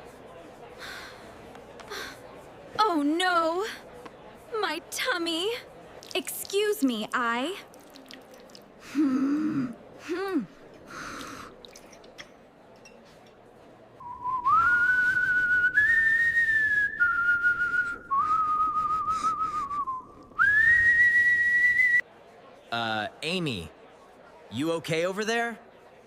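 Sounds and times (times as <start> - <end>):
person whistling a slow tune: 14.0 - 22.0.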